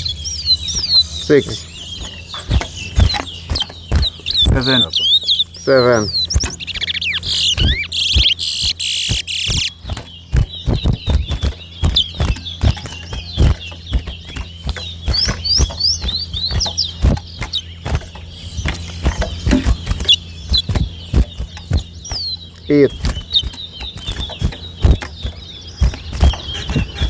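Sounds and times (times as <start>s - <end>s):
finch singing: 0.0s - 27.0s
sharp clicks: 7.1s - 9.7s.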